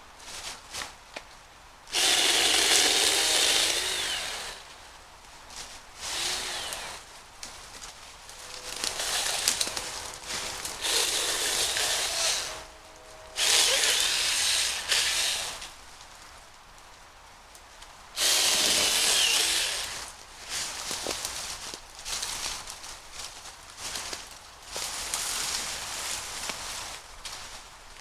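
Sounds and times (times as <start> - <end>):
mini chainsaw cutting: 1.9 - 4.8, 6.0 - 7.1, 8.2 - 15.8, 18.2 - 20.1.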